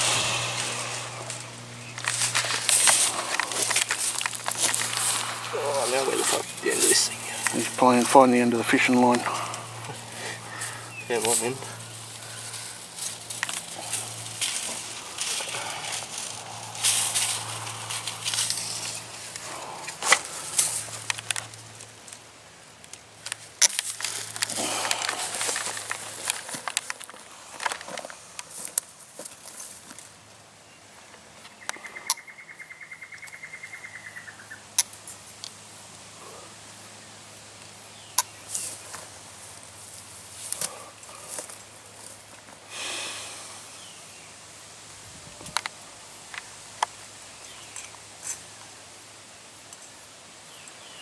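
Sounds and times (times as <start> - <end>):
wire rustling and crunching: 0.0 - 30.2.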